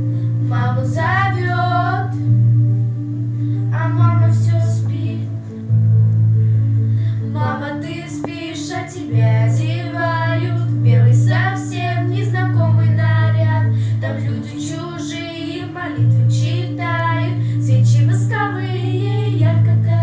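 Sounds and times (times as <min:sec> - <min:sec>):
backing track with bass notes: 0:00.0 - 0:15.0
woman singing with vibrato: 0:00.5 - 0:02.2, 0:07.3 - 0:20.0.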